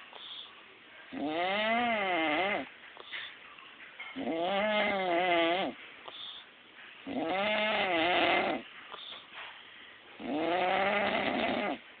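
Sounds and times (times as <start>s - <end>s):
man snoring: 1.2s - 2.6s, 4.3s - 5.8s, 7.1s - 8.6s, 10.2s - 11.8s.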